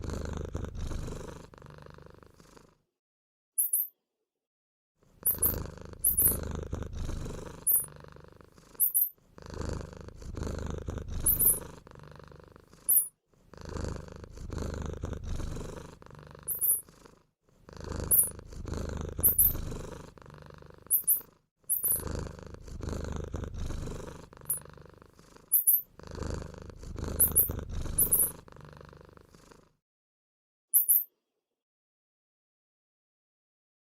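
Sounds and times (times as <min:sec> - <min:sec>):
low purring rumble: 0:00.0 - 0:02.4, 0:05.2 - 0:12.9, 0:13.5 - 0:21.0, 0:21.8 - 0:29.6
high-pitched squeaks: 0:30.8 - 0:31.1.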